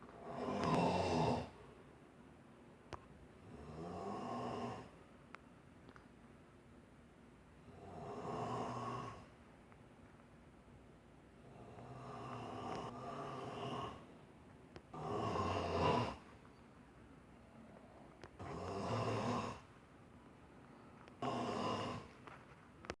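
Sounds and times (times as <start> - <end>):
man snoring: 0.2 - 1.6, 3.5 - 4.9, 7.7 - 9.3, 11.5 - 14.1, 14.9 - 16.2, 18.4 - 19.7, 21.2 - 22.1.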